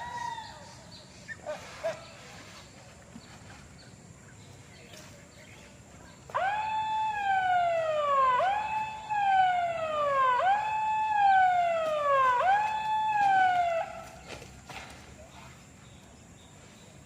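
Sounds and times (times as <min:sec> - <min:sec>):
siren wailing: 0:06.3 - 0:14.2.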